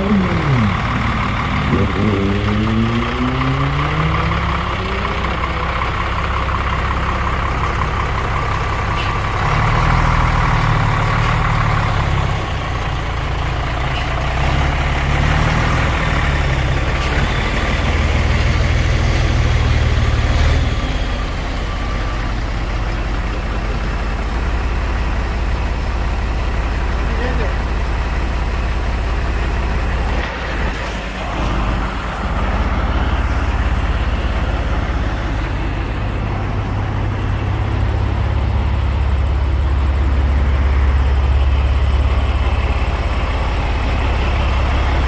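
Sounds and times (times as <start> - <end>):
truck diesel engine running: 0.0 - 45.0.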